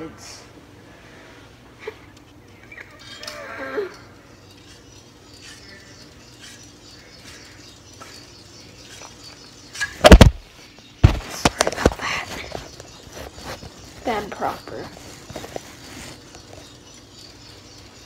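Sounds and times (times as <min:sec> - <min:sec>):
loud sharp knocks and bumps: 0:10.0 - 0:11.6.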